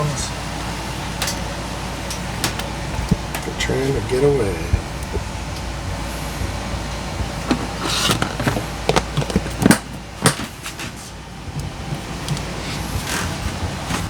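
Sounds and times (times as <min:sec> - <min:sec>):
steady low hum: 0:00.0 - 0:14.0
handling clicks and knocks: 0:01.1 - 0:03.6, 0:07.2 - 0:14.0
rubbing and scraping: 0:07.2 - 0:11.2.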